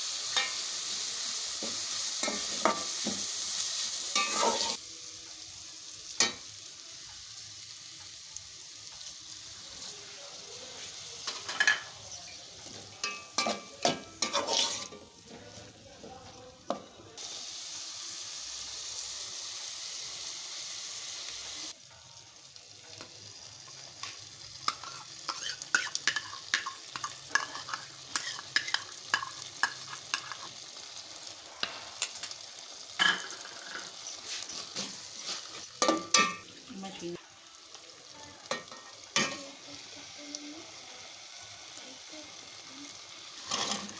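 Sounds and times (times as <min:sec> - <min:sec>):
food sizzling in oil: 0:00.0 - 0:43.9
spatula scraping a pan: 0:04.2 - 0:04.8, 0:12.7 - 0:15.5, 0:24.7 - 0:30.6, 0:43.4 - 0:43.9.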